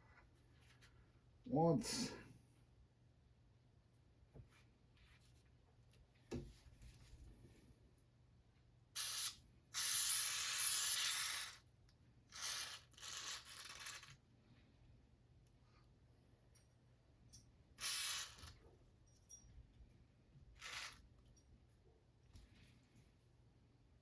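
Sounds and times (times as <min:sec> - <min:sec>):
aerosol can spraying: 0:09.0 - 0:11.6, 0:17.8 - 0:18.6.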